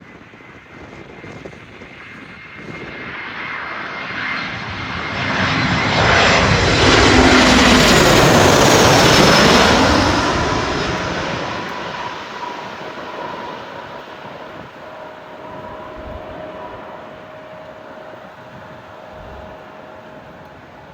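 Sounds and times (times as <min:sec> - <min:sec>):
jet airliner passing by: 0:00.0 - 0:20.9.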